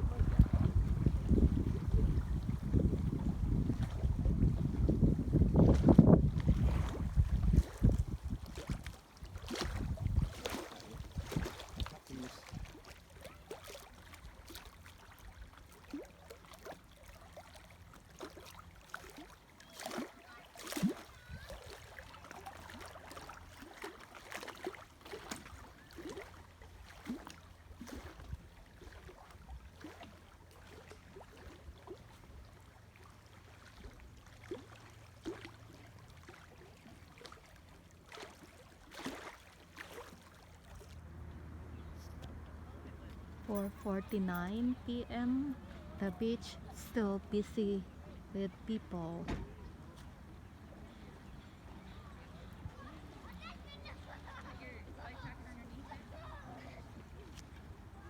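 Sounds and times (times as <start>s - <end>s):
steady low rumble: 0.0s - 8.2s
small water splashes and gurgles: 0.0s - 58.0s.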